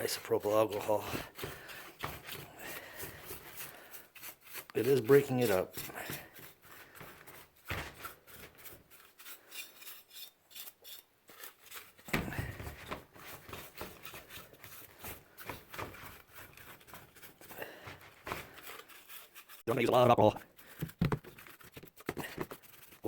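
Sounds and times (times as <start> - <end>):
paint brush scrubbing components: 0.0 - 23.0
thump: 20.8 - 21.3.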